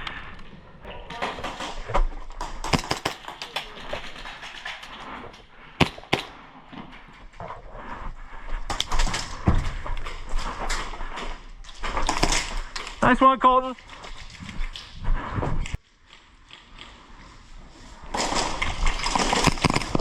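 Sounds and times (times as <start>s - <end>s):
airsoft guns firing: 1.1s - 4.8s, 5.8s - 6.5s, 12.0s - 12.8s, 18.2s - 20.0s
loud gunshots: 2.7s - 3.6s, 5.8s - 6.4s.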